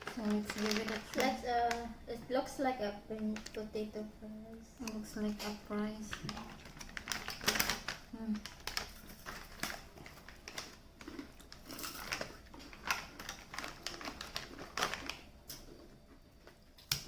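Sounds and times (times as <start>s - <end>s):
person chewing crunchy snack: 9.4s - 16.6s.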